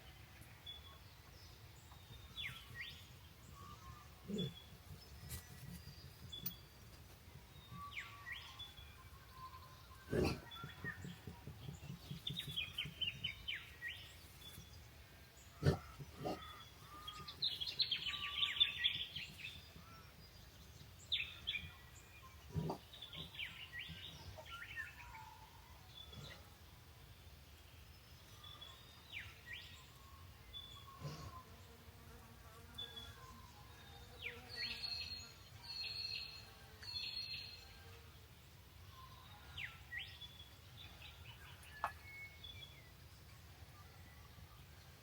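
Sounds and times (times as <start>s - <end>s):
birds chirping and singing: 0.0s - 31.8s, 32.6s - 38.0s, 38.8s - 45.0s.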